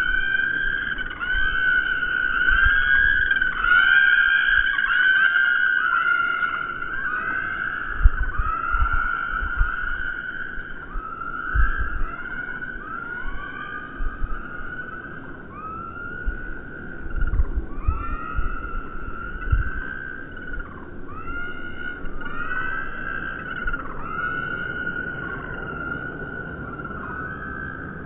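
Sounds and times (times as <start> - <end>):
slowed-down bird calls: 0.0 - 28.0.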